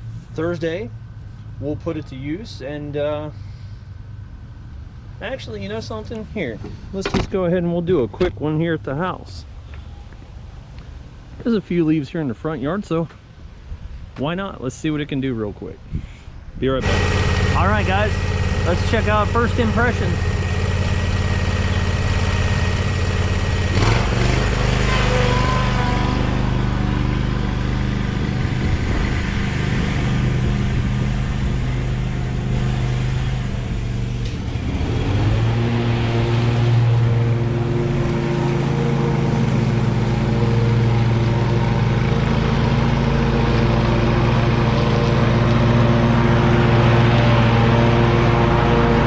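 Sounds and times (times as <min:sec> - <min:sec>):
mower engine running: 0:16.8 - 0:49.0.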